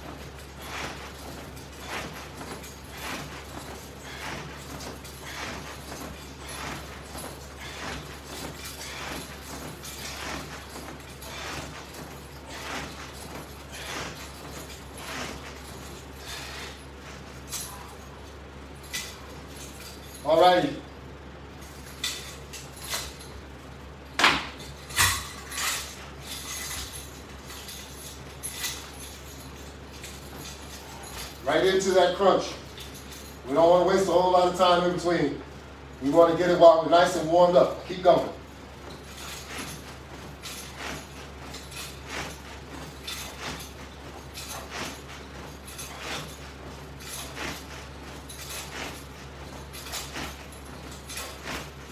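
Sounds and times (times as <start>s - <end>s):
resistance bands swishing: 0.0s - 20.8s, 24.2s - 35.1s, 36.0s - 51.9s
steady low hum: 0.0s - 51.9s
metal hardware clinking: 24.2s - 31.4s.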